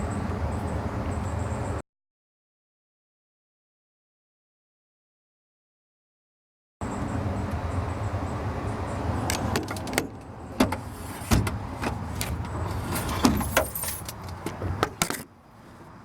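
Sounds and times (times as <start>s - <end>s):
things rattling being handled: 9.4s - 15.3s.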